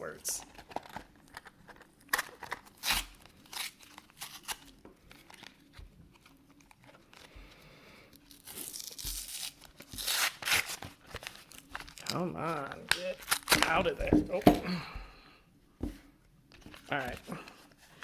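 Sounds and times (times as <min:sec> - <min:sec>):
packaging tearing: 0:00.4 - 0:07.3, 0:08.1 - 0:14.0
packaging crinkling: 0:00.4 - 0:14.4.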